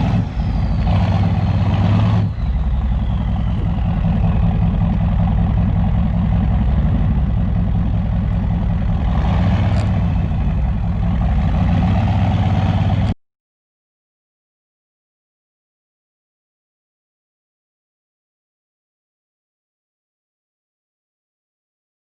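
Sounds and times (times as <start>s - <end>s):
diesel engine idling: 0.0s - 13.2s
faint turbo whistle: 0.0s - 13.2s.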